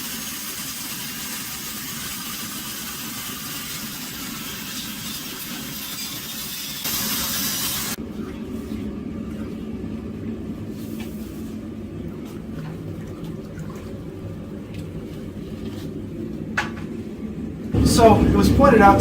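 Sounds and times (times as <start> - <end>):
forge burner rumbling: 6.9 - 19.0.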